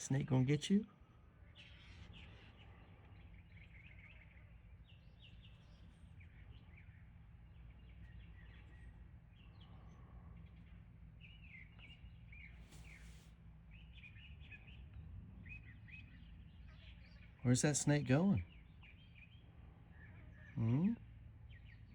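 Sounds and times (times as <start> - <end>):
faint low rumble: 0.0 - 21.9
small bird chirps: 1.4 - 21.9
brief rustle: 12.7 - 13.3.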